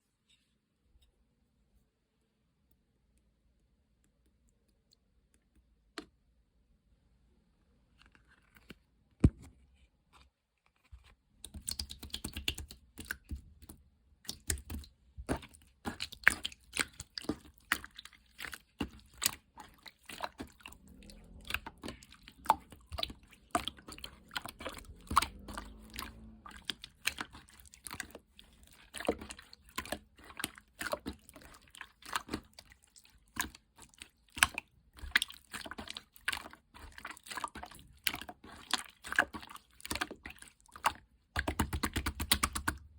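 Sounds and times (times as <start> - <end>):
slime squished by hand: 11.4 - 42.9.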